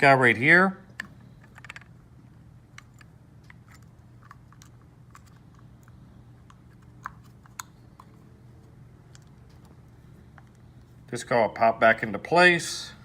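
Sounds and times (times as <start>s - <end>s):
steady low hum: 0.0s - 13.0s
plastic parts clicking: 1.0s - 1.9s.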